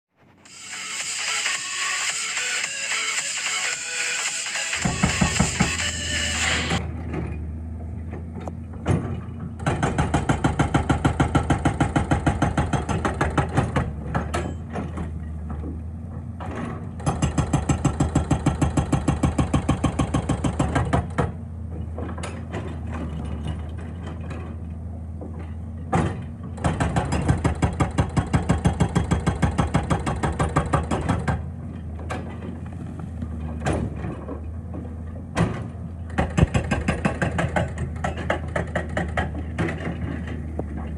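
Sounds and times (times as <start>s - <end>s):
diesel engine running: 0.3s - 40.9s
hydraulic breaker hammering rock: 4.4s - 6.9s, 8.8s - 15.8s, 16.4s - 24.5s, 25.2s - 32.6s, 33.5s - 40.9s.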